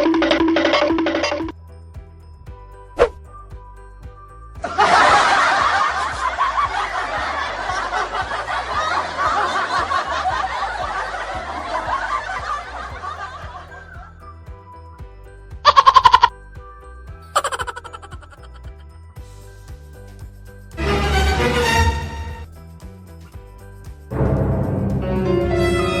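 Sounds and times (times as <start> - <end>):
background music: 0.0 - 26.0
crowd laughing: 4.6 - 14.2, 17.3 - 18.8.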